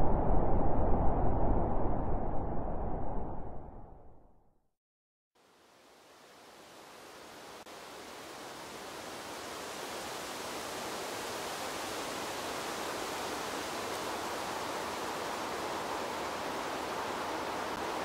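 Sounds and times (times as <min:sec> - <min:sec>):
wind blowing through trees: 0:05.4 - 0:18.0.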